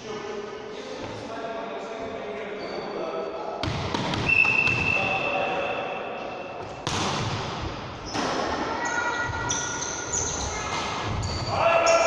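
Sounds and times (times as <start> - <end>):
players' voices echoing: 0.0 - 12.0
shoe squeaks: 2.5 - 3.3, 4.2 - 6.6, 8.0 - 12.0
ball hitting hard: 6.8 - 7.6.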